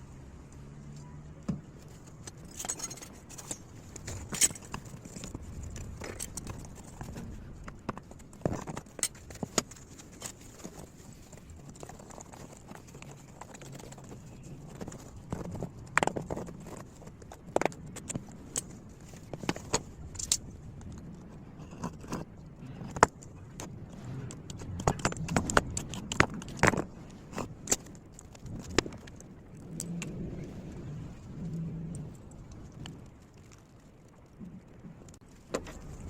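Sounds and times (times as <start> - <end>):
low steady hum: 0.0 - 36.0
metallic clinks and knocks: 2.0 - 10.8.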